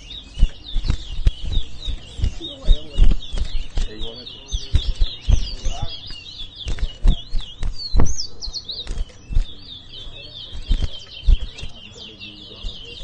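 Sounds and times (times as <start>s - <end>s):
finch twittering warble: 0.0s - 13.0s.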